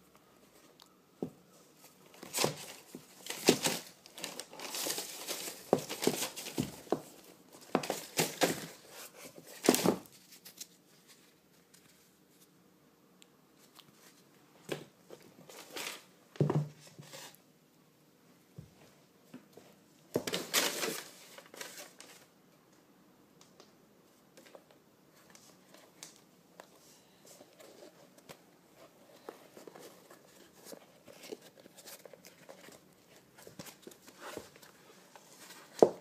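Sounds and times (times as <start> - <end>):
paper rustling and crinkling: 1.6 - 12.5, 20.2 - 22.3, 24.4 - 36.0.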